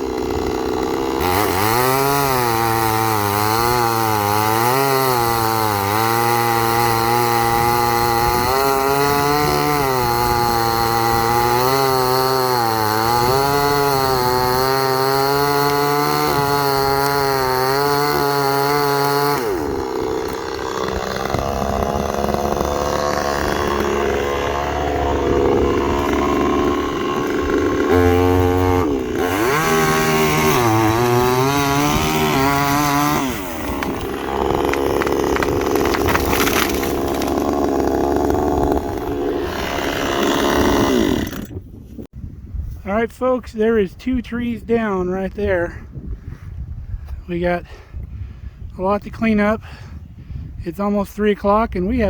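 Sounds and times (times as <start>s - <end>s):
chainsaw cutting wood: 0.0s - 41.8s
rough unpitched sound: 31.7s - 37.6s.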